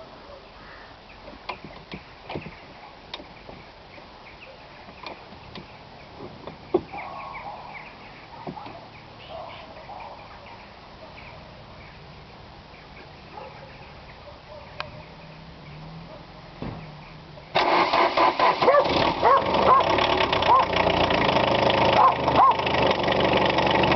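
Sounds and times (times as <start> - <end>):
small birds chirping: 0.4 - 17.6.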